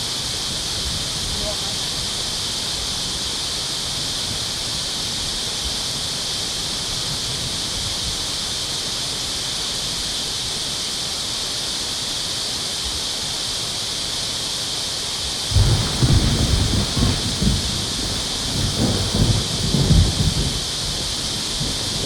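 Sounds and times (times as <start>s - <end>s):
water hissing: 0.0s - 22.0s.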